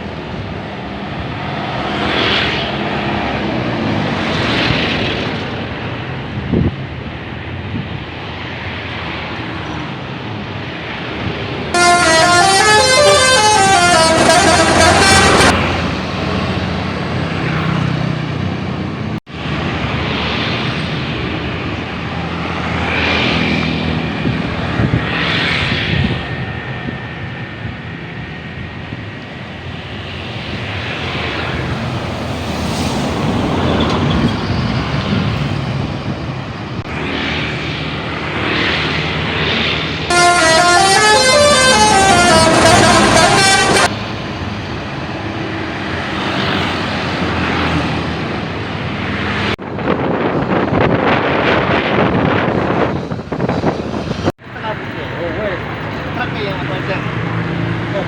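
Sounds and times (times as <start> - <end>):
bus engines: 0.0 - 58.0
road noise: 0.0 - 58.0
multi-tone musical bus horn: 11.7 - 15.9, 40.1 - 43.9.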